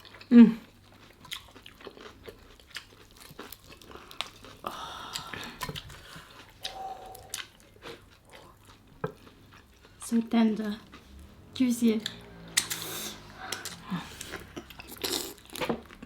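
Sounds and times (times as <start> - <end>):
chewing crispy fried chicken: 0.0 - 16.0
wet mouth sounds: 4.6 - 9.2, 12.0 - 15.8.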